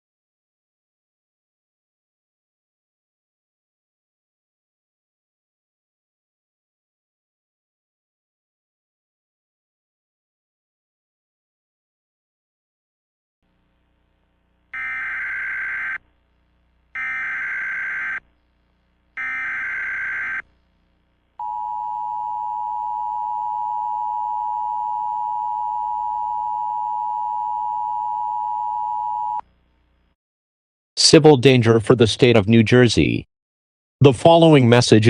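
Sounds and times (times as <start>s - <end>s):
two-tone attention signal: 19.2s - 20.4s.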